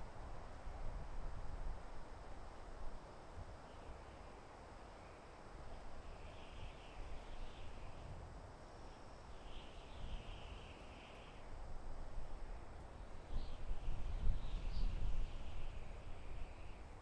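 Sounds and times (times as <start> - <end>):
soft wind in forest: 0.0 - 17.0
faint chirping: 3.6 - 8.1, 8.8 - 11.5, 12.4 - 16.9.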